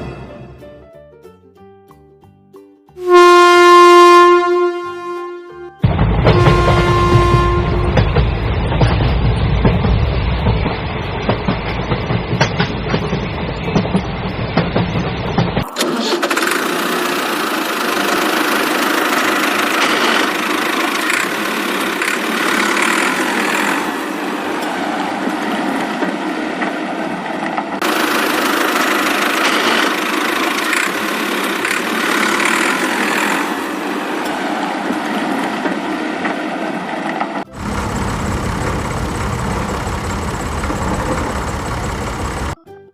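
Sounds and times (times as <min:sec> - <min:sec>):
engine running with rattling knock: 0:13.8 - 0:23.9, 0:27.8 - 0:33.6, 0:37.5 - 0:42.6.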